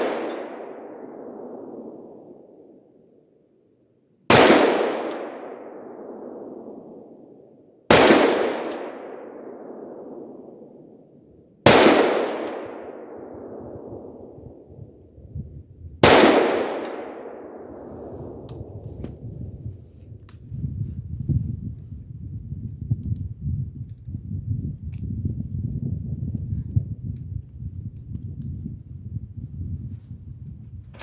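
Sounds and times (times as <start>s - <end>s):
rifle shots with echo: 0.0s - 2.8s, 4.3s - 11.0s, 11.6s - 14.6s, 16.0s - 18.8s.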